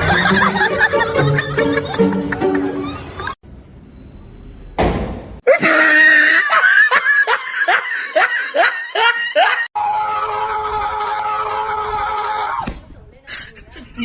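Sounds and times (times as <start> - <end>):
high-pitched laughter: 5.5 - 9.7.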